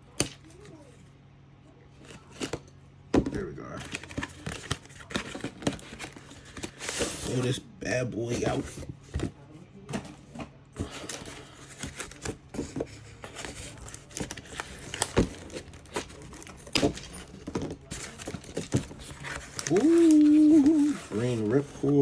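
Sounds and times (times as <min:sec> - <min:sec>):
packaging crinkling and rustling: 0:03.4 - 0:07.6, 0:10.8 - 0:22.0
plastic parts clicking and knocking: 0:11.1 - 0:19.8.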